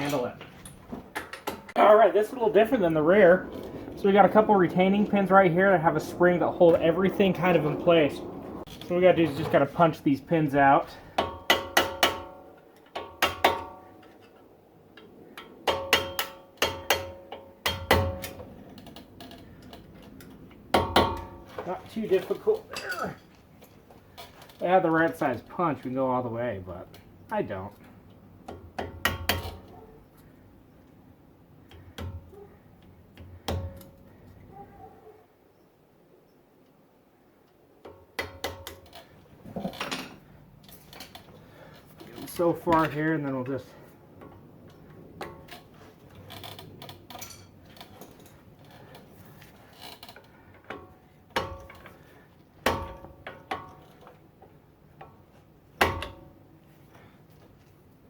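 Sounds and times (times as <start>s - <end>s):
metal clicking and scraping: 44.2s - 54.2s.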